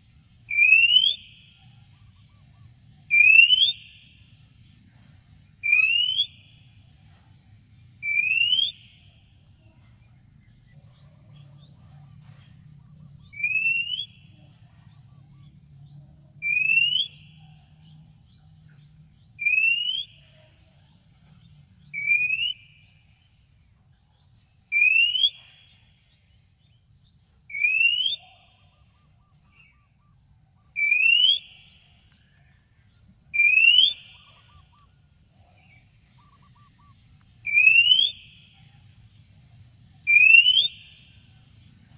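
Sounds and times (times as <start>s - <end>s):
bird upward-sliding whistle: 0.5s - 1.4s, 3.1s - 4.0s, 5.6s - 6.4s, 8.0s - 8.9s, 13.3s - 14.4s, 16.4s - 17.4s, 22.0s - 22.8s, 24.7s - 25.5s, 27.5s - 28.3s, 33.4s - 34.8s, 36.4s - 38.4s, 40.1s - 40.9s.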